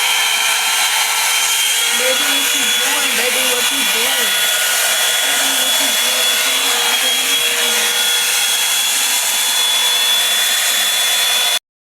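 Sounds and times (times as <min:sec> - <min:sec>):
hair dryer running: 0:00.0 - 0:11.6.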